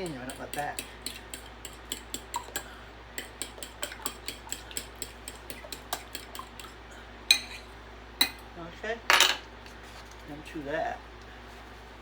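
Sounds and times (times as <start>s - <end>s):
whisk beating eggs in bowl: 0.0s - 7.7s.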